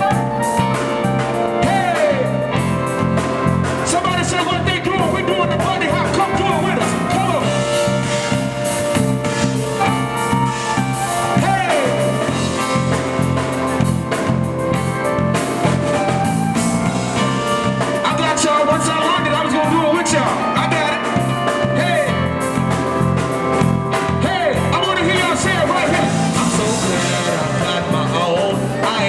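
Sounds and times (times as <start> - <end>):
zydeco band playing: 0.0 - 29.0.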